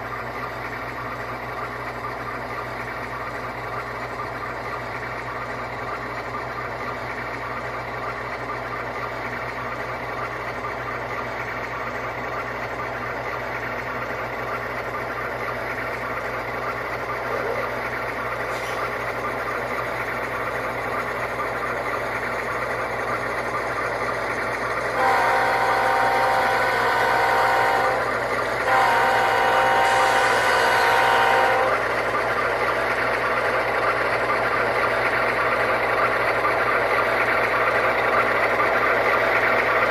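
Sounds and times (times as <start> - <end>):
model diesel locomotive engine: 0.0 - 39.9
locomotive air horn blasts: 25.0 - 31.8.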